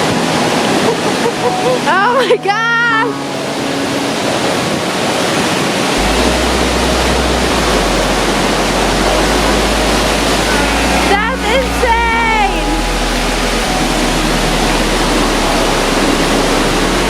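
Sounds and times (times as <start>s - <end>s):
waterfall roaring: 0.0s - 17.0s
deep rumble: 6.0s - 17.0s.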